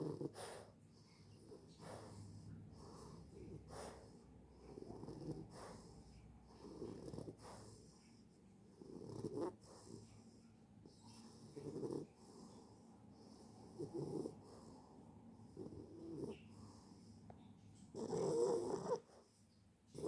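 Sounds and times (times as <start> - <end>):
dog snoring: 0.0 - 17.2, 17.9 - 19.3.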